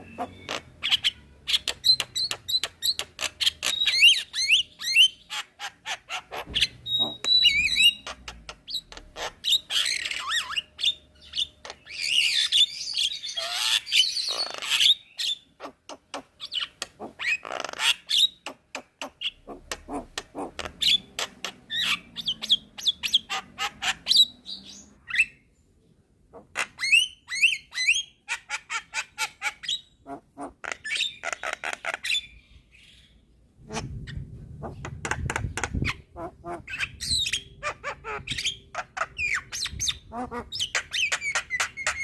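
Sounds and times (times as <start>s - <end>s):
myna chattering and squawking: 0.0s - 10.6s, 15.6s - 24.4s, 33.6s - 42.0s
low rumble: 33.6s - 37.2s.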